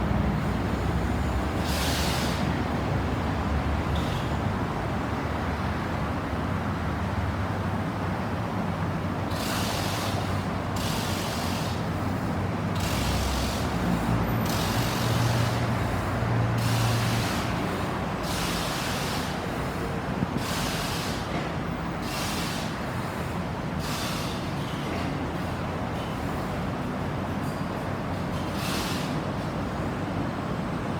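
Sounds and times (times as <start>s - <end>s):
tyres hissing on wet road: 1.0s - 2.9s, 9.3s - 24.8s, 28.3s - 29.4s.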